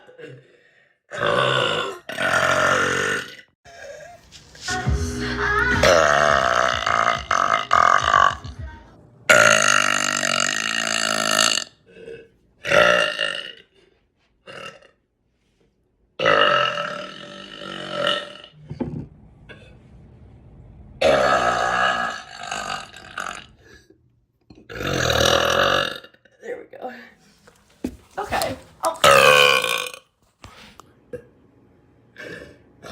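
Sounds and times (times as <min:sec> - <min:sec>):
woman burping: 0:01.1 - 0:03.9, 0:05.8 - 0:08.5, 0:09.3 - 0:13.6, 0:28.9 - 0:30.0.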